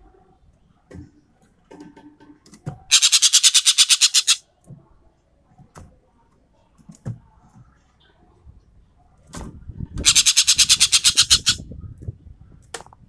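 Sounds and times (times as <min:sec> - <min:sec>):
bird harsh rattling call: 0:02.9 - 0:04.4, 0:10.0 - 0:11.6.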